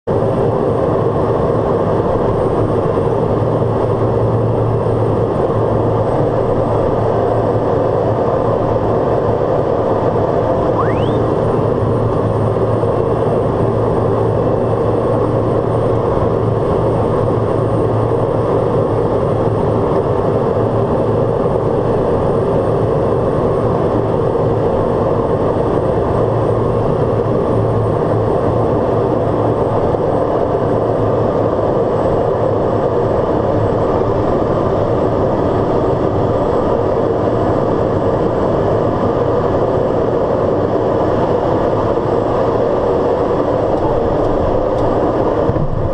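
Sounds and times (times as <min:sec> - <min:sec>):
turboprop engine drone: 0:00.1 - 0:45.9
thin high whine: 0:10.7 - 0:11.7.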